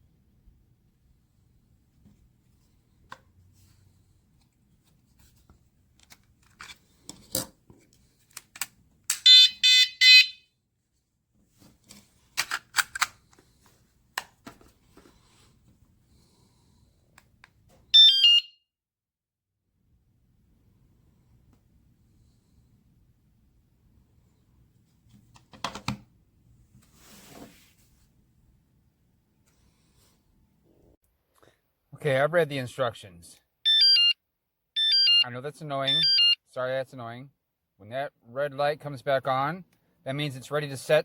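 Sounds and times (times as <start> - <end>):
beeps stepping down in pitch: 35.9 - 36.4.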